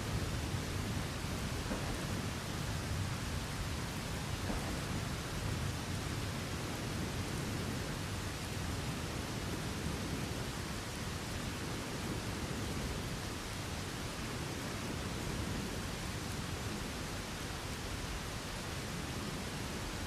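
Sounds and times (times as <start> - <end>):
low thunder rumbling: 0.0 - 13.6
steady rain falling: 0.0 - 20.0.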